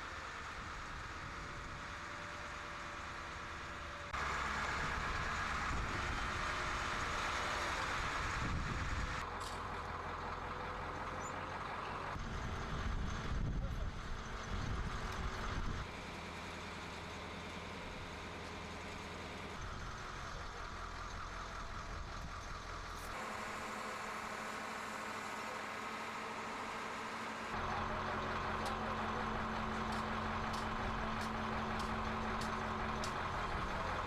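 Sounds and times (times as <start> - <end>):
vehicle engine humming: 0.0 - 34.0
light ticks: 29.8 - 33.2.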